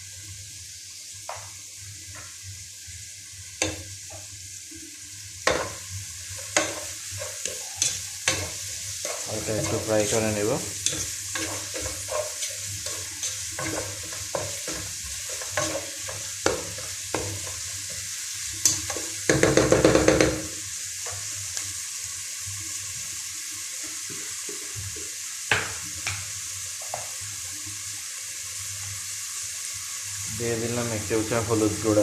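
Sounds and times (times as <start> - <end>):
onion frying in oil: 0.0 - 32.0
spatula scraping a pot: 6.4 - 17.6.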